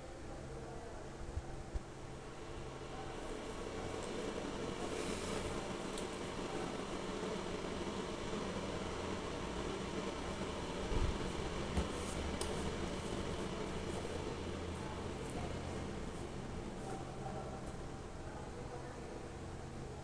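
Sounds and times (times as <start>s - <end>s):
coffee maker humming: 2.0s - 18.2s.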